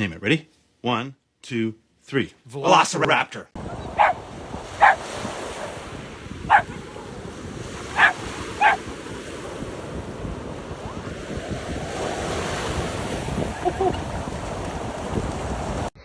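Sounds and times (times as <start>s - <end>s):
wind noise on microphone: 3.6s - 16.0s
dog barking: 3.9s - 5.8s, 6.4s - 7.2s, 7.8s - 8.9s.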